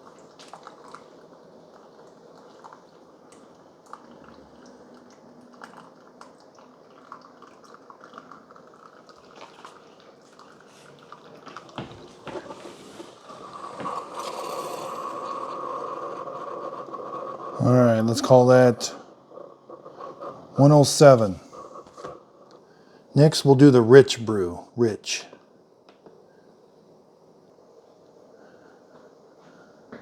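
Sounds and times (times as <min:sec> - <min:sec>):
coffee maker gurgling and dripping: 0:00.0 - 0:23.8
machine whir: 0:12.1 - 0:22.6.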